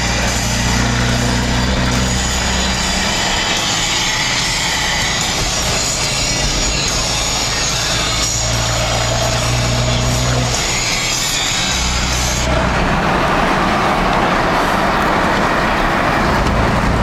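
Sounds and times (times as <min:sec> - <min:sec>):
diesel engine drone: 0:00.0 - 0:17.0
road noise: 0:00.0 - 0:17.0.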